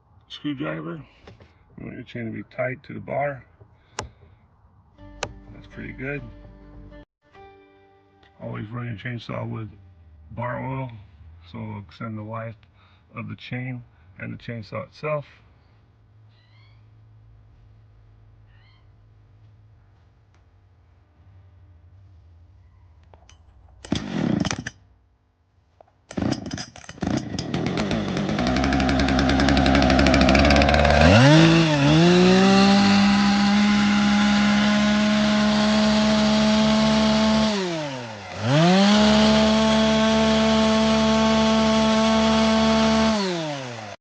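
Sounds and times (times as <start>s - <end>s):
chainsaw engine revving: 23.8s - 24.7s, 26.1s - 44.0s
chainsaw cord pull: 23.8s - 24.8s, 26.1s - 44.0s.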